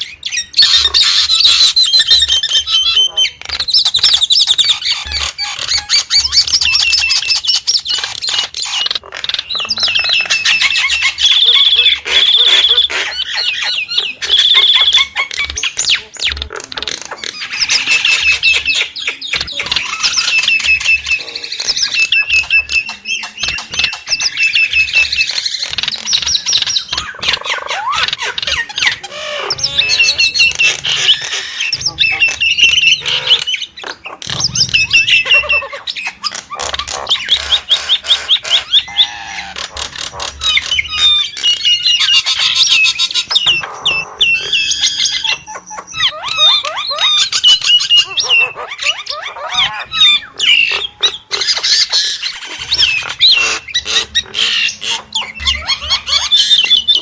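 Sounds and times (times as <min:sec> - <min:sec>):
myna bird singing: 0:00.0 - 0:57.0.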